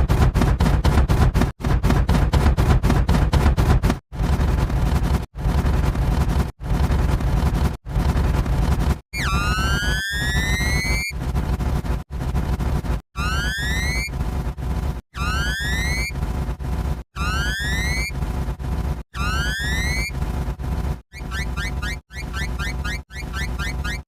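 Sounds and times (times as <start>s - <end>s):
noisy sound effect clips: 0.0s - 24.0s
rising siren-like whistling tone: 9.2s - 11.2s, 13.2s - 14.2s, 15.2s - 16.2s, 17.2s - 18.2s, 19.2s - 20.2s, 21.1s - 24.0s.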